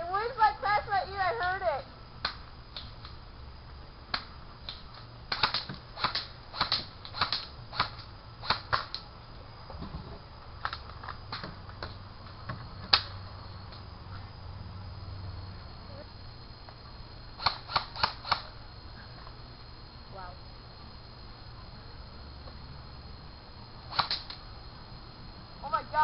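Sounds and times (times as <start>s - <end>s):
airsoft guns firing: 5.3s - 9.0s, 17.4s - 18.5s, 23.9s - 24.4s.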